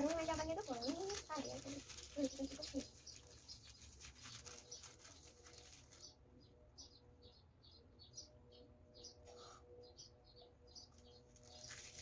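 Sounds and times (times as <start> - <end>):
styrofoam beads rattling: 0.0 - 6.0, 11.5 - 12.0.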